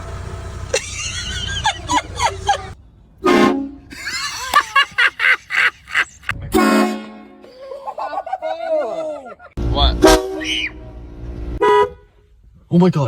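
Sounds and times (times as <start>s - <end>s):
novelty car horn honking: 3.2s - 3.9s, 6.5s - 7.4s, 11.6s - 12.1s.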